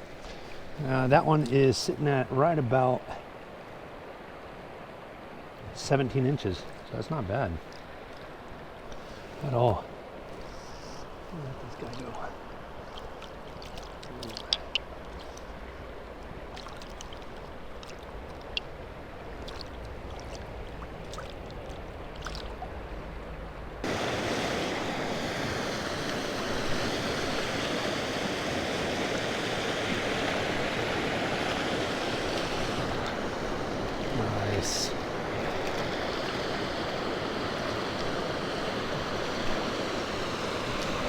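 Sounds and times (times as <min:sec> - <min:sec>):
creek water rushing: 0:00.0 - 0:41.0
small ticks and clicks: 0:12.9 - 0:15.5.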